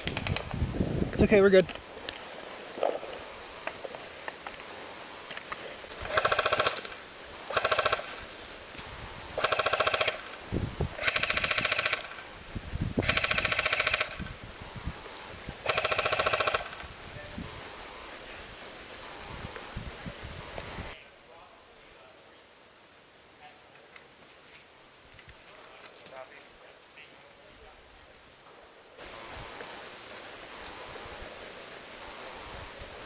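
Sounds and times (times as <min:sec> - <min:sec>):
airsoft guns firing bursts: 0:05.9 - 0:08.3, 0:09.4 - 0:10.4, 0:11.0 - 0:12.3, 0:13.0 - 0:14.4, 0:15.6 - 0:16.8.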